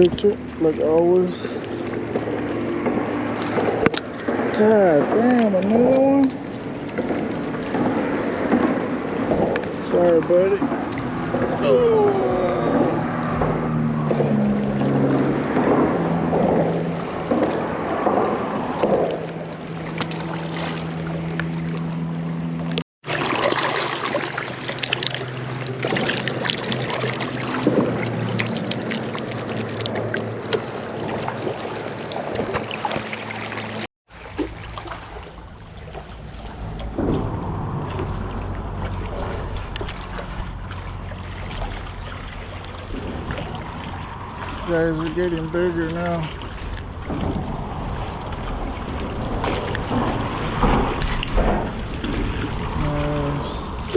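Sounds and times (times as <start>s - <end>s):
wind buffeting microphone: 0.0s - 19.8s, 35.3s - 53.9s
river water flowing: 0.0s - 53.9s.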